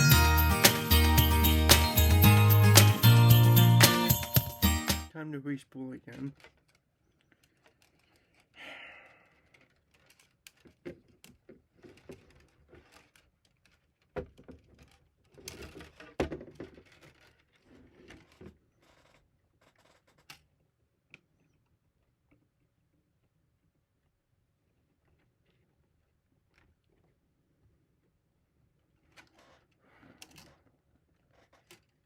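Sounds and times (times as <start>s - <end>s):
plastic and filament handling clicks: 9.6s - 17.4s.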